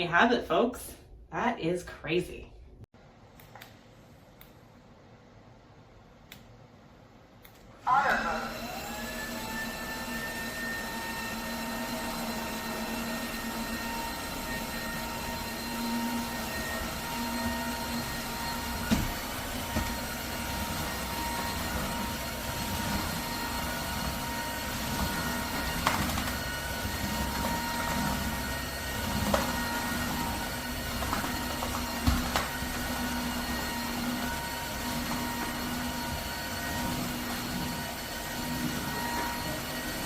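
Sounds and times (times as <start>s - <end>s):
vacuum mop motor whine: 7.9s - 40.0s.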